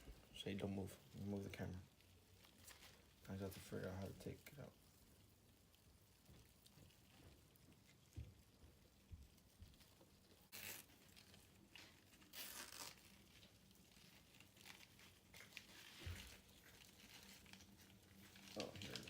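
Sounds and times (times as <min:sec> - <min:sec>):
packaging rustling: 0:10.5 - 0:19.0.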